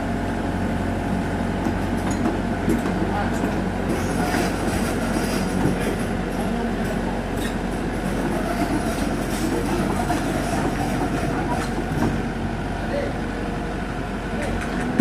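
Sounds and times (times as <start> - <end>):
diesel engine hum: 0.0 - 15.0
metallic clatter of steel tracks: 1.6 - 12.4.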